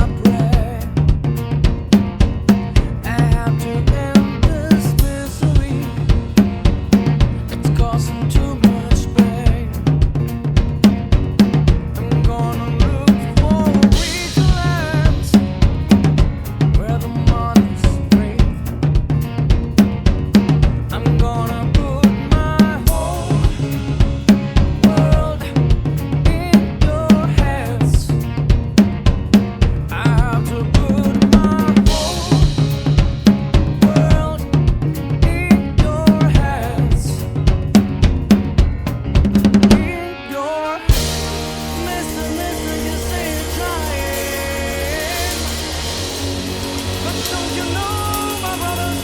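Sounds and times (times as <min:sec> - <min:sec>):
person singing melody: 0:00.0 - 0:01.2, 0:11.9 - 0:18.6, 0:20.9 - 0:28.5, 0:29.9 - 0:37.4, 0:39.7 - 0:49.0
drum kit groove: 0:00.0 - 0:40.1, 0:40.8 - 0:49.0
backing track: 0:00.0 - 0:49.0
cymbal crash: 0:40.9 - 0:49.0.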